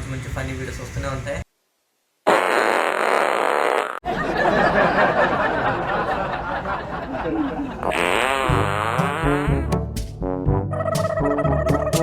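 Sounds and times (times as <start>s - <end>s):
fart sound effect: 2.3s - 4.0s, 7.8s - 12.0s
people laughing and chattering: 4.1s - 7.9s
warbling sound effect: 10.7s - 12.0s.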